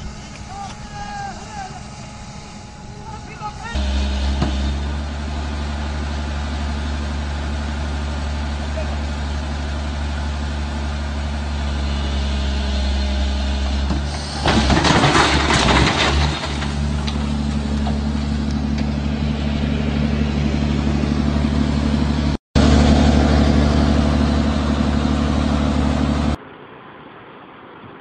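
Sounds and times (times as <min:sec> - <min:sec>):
heavy machinery engine running: 0:00.0 - 0:26.6
loud crash-like burst: 0:13.9 - 0:18.2.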